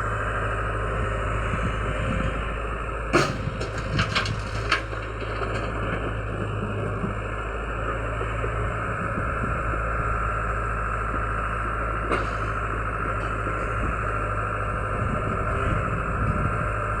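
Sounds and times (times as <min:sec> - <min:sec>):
excavator engine running: 0:00.0 - 0:17.0.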